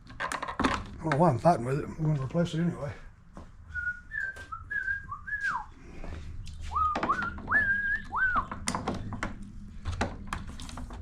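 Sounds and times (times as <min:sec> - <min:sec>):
man whistling a tune: 0:03.7 - 0:05.7, 0:06.7 - 0:08.5.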